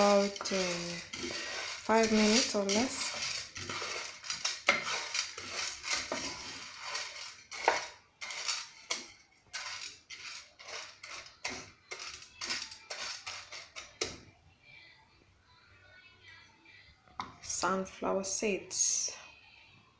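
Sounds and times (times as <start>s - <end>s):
seeds rattling in a pan: 0.0s - 14.2s
utensil scraping a dry pan: 0.0s - 14.2s.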